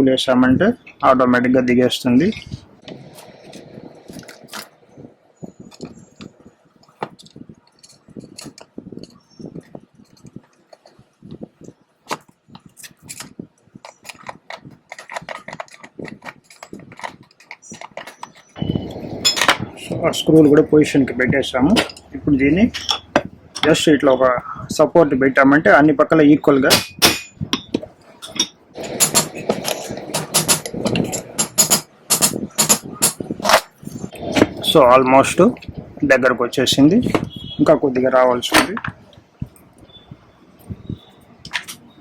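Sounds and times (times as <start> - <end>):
hammer tapping metal cover: 26.7 - 27.8, 28.4 - 33.2.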